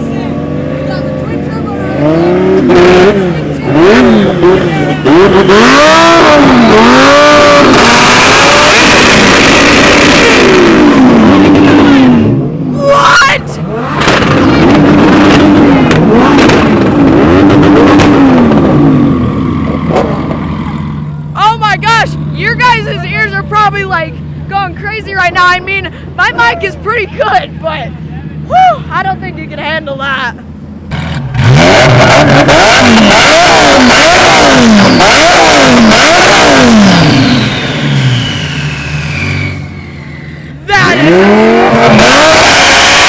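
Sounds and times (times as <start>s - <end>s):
car engines revving hard: 0.0s - 24.5s, 25.2s - 43.0s
exhaust cracks: 1.2s - 12.4s, 13.6s - 21.1s, 30.8s - 43.0s.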